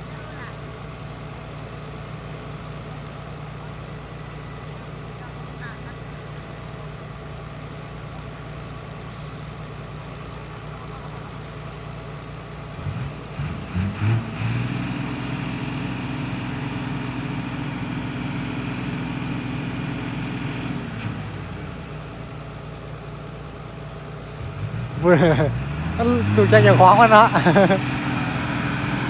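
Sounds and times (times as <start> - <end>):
diesel excavator engine revving: 11.3 - 29.0.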